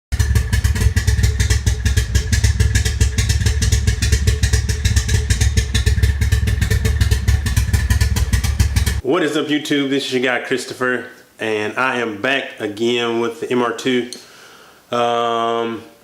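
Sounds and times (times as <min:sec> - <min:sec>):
engine running rough: 0:00.1 - 0:09.0.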